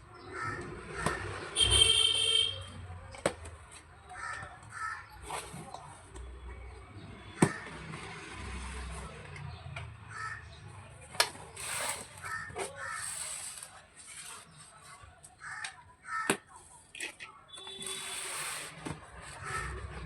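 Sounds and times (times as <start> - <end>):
crows cawing: 0.3 - 1.2, 4.2 - 5.1, 10.1 - 10.6.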